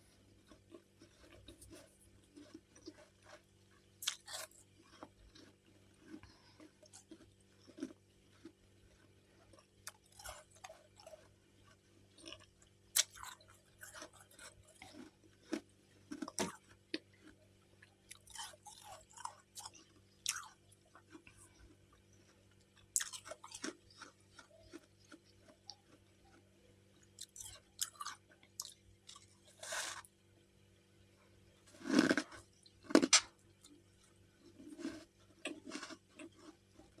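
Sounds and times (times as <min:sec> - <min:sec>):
chewing frost crunches: 0:04.0 - 0:17.4, 0:18.1 - 0:22.4, 0:23.0 - 0:30.1, 0:34.5 - 0:37.0.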